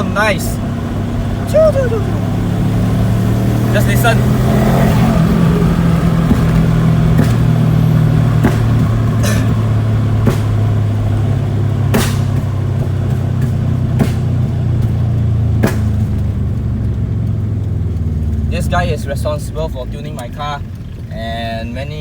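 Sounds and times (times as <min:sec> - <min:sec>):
car engine running inside cabin: 0:00.0 - 0:22.0
short sharp bursts: 0:11.8 - 0:14.4.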